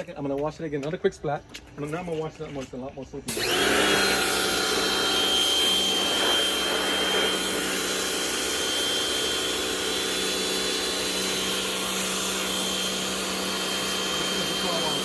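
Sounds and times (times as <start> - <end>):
pressure washer motor whine: 3.3 - 15.0
water jet hissing: 3.3 - 15.0.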